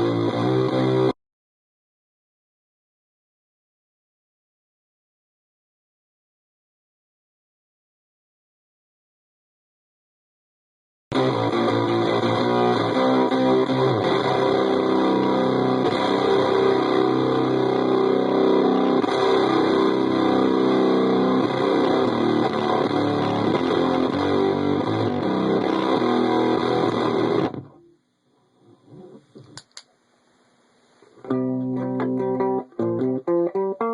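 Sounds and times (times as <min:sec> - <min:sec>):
distorted electric guitar: 0:00.0 - 0:01.2, 0:11.1 - 0:28.0, 0:31.1 - 0:33.9.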